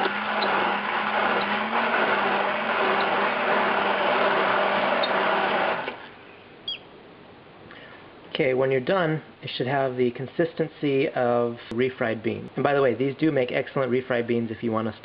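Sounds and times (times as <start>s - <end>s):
electric blender running: 0.0s - 6.1s.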